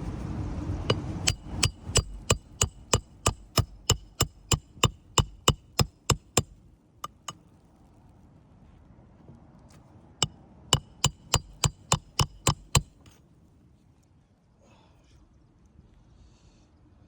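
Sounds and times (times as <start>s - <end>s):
hammer striking nail: 0.9s - 7.4s, 10.8s - 13.2s.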